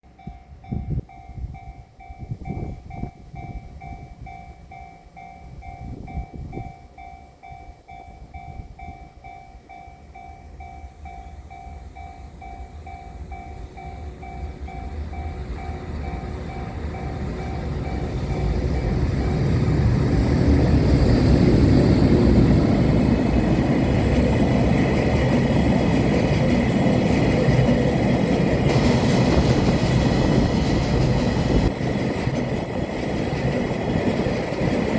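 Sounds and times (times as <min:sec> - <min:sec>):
freight train rumbling past: 0:00.1 - 0:34.9
level crossing warning bell dinging: 0:00.2 - 0:19.7
wheels clacking over rail joints: 0:21.3 - 0:34.9.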